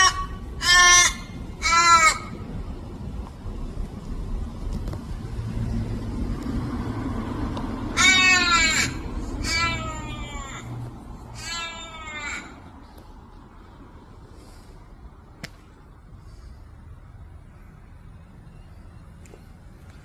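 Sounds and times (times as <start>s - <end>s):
bird wailing calls: 0.0s - 2.5s, 7.9s - 12.7s.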